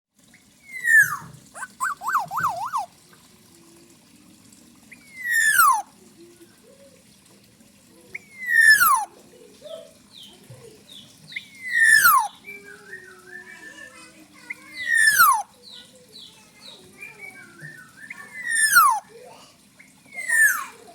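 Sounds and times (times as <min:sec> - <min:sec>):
oriole calling: 0:00.6 - 0:03.0, 0:04.9 - 0:06.0, 0:08.2 - 0:09.2, 0:11.4 - 0:12.4, 0:14.5 - 0:15.5, 0:17.2 - 0:19.1
wavering bird phrase: 0:00.7 - 0:02.9, 0:05.0 - 0:05.9, 0:08.1 - 0:19.3, 0:20.1 - 0:20.9.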